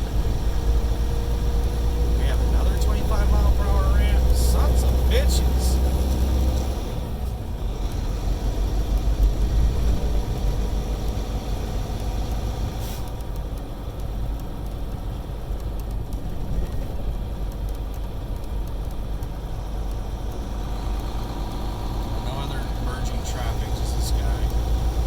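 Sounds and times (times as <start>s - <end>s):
diesel engine and road noise: 0.0s - 25.0s.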